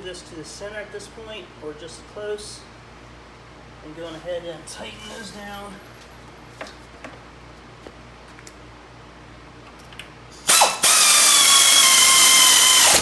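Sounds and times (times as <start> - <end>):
power tool high whine: 10.5 - 13.0.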